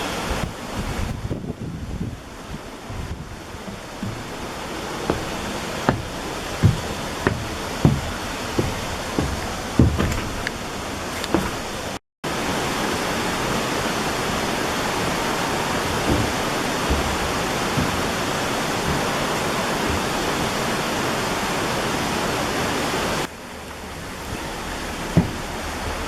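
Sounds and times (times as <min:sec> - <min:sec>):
steady rushing hiss: 0:00.0 - 0:26.0
faint thumps: 0:00.3 - 0:12.0, 0:15.0 - 0:20.4, 0:23.4 - 0:26.0.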